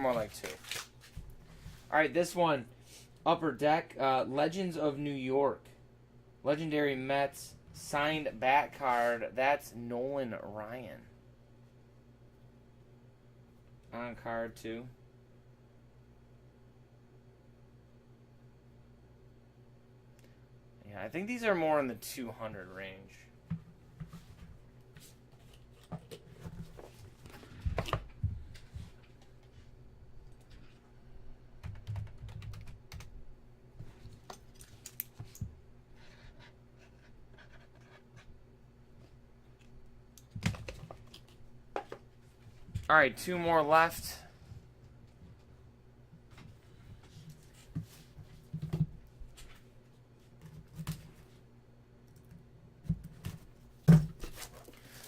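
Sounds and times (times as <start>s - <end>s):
cards and packaging rustling: 0.0s - 1.9s
faint room hum: 0.0s - 55.0s.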